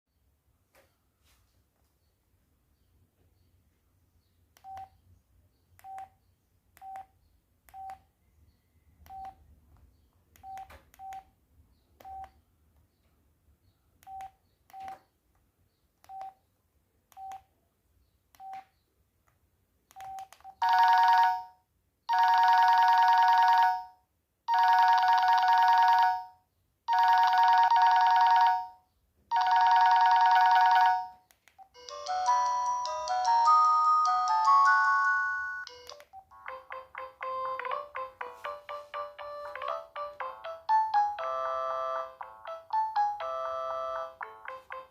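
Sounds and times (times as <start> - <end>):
phone key beeps: 9.1 - 9.4, 10.4 - 11.3, 14.0 - 15.0, 16.1 - 16.4, 20.0 - 20.7, 34.4 - 40.3.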